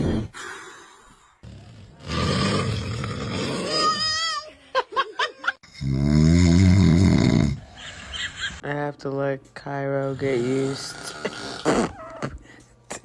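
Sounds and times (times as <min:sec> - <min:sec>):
man snoring loudly: 0:01.4 - 0:04.0, 0:05.7 - 0:08.6, 0:10.1 - 0:12.3.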